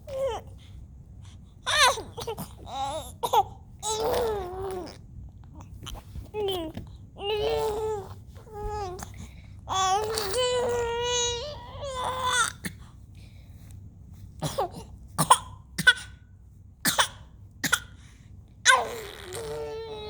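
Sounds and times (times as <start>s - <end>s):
baby cooing and squeaking: 1.7s - 5.0s, 5.9s - 9.0s, 9.7s - 12.6s, 18.7s - 20.0s.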